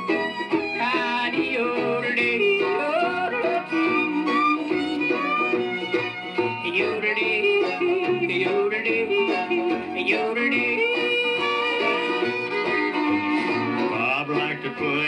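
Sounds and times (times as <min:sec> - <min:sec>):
strummed guitar: 0:00.0 - 0:15.0
man yodeling: 0:00.8 - 0:05.4, 0:06.6 - 0:12.3, 0:13.8 - 0:15.0.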